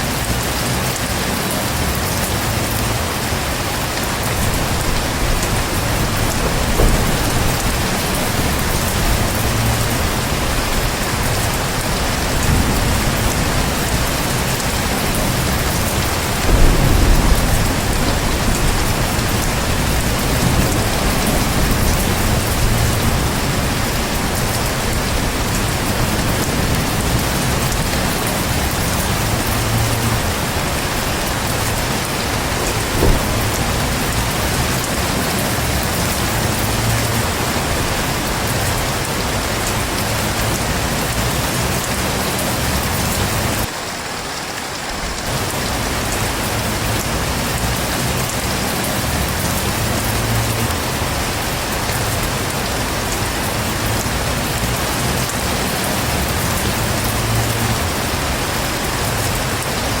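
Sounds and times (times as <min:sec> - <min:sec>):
low rumble of thunder: 0:00.0 - 0:43.7
heavy rain falling: 0:00.0 - 1:00.0.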